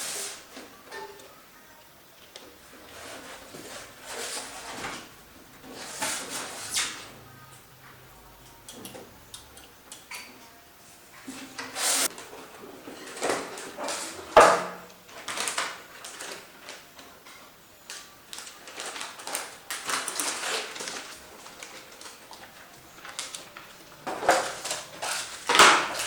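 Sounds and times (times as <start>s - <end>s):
handling parts and packaging: 2.1s - 7.4s, 11.2s - 26.0s.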